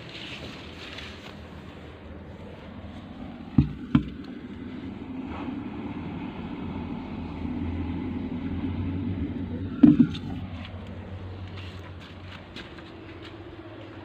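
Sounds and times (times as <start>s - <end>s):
sharp knocks: 3.5s - 4.3s, 9.8s - 10.4s.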